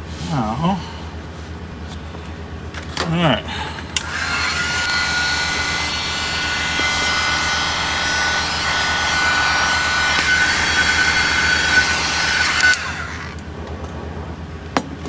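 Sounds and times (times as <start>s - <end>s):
heat gun blowing air: 4.0s - 13.4s
high whine: 4.0s - 13.5s.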